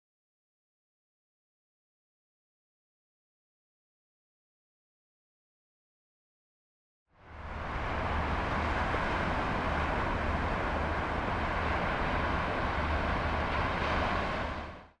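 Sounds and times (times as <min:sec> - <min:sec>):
sea: 0:07.1 - 0:15.0
wind: 0:07.1 - 0:15.0.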